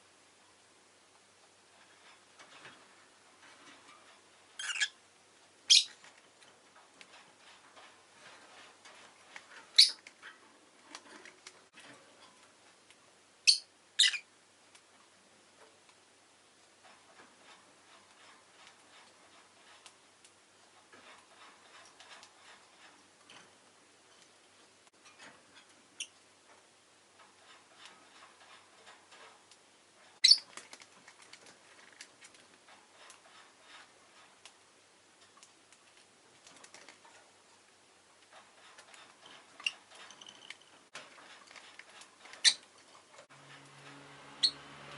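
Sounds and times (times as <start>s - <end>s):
faint ticks and rustles: 0.0s - 44.9s
lovebird shrill calls: 4.6s - 5.0s, 5.7s - 5.9s, 13.4s - 14.2s
bird ticks and clicks: 30.2s - 34.6s, 35.2s - 37.2s.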